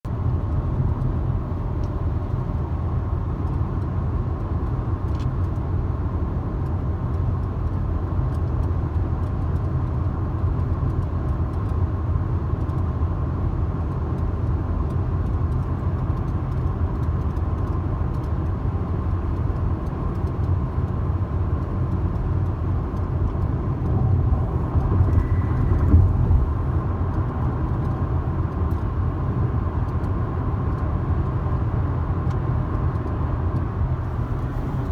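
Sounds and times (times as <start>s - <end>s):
car road rumble: 0.1s - 34.9s
car bump: 24.3s - 26.9s.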